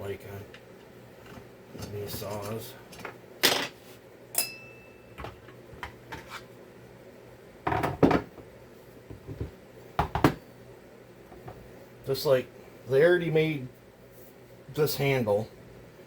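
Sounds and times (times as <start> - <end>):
metal tools clinking on workbench: 1.8 - 3.8.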